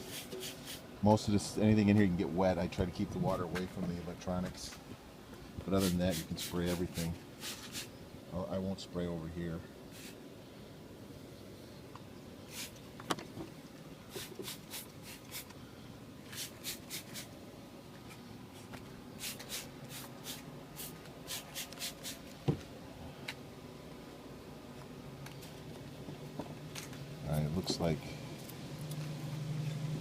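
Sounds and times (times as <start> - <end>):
spray bottle squirting: 0.0 - 0.8, 5.8 - 7.9, 12.5 - 12.8, 14.1 - 15.5, 16.3 - 17.3, 19.2 - 22.3.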